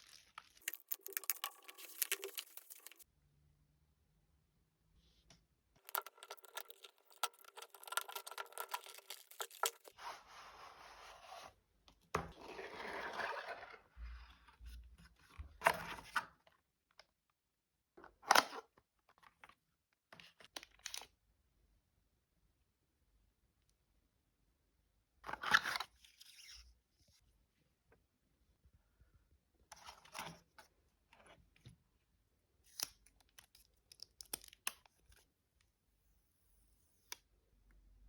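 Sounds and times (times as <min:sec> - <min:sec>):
packaging tearing and crinkling: 0:00.0 - 0:03.0, 0:05.9 - 0:09.9
packaging scraping and sliding: 0:12.3 - 0:13.9.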